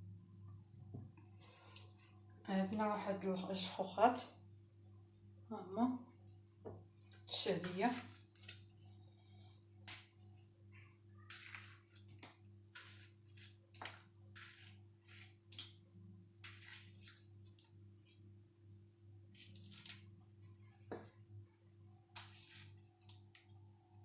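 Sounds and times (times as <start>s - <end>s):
knife cutting through fruit: 11.3s - 15.7s.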